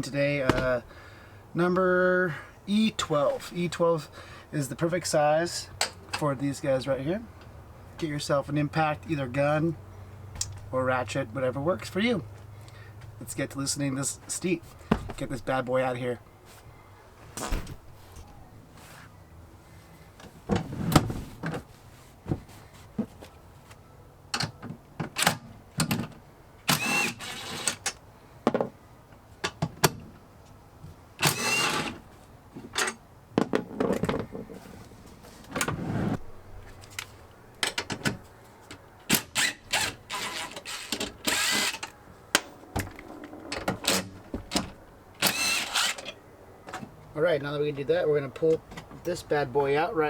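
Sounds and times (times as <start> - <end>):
impact driver whirring: 39.2 - 41.9, 45.2 - 46.0.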